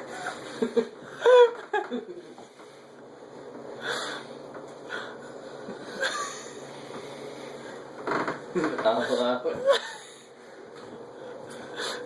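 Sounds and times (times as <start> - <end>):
wheezy strained breathing: 3.8 - 7.9, 11.2 - 12.0.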